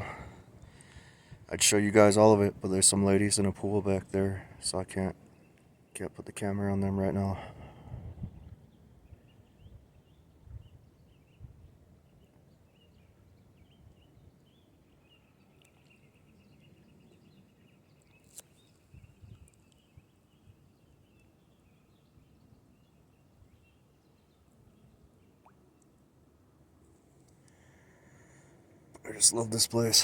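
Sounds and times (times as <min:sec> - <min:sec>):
faint bird chirps: 0:08.3 - 0:26.0.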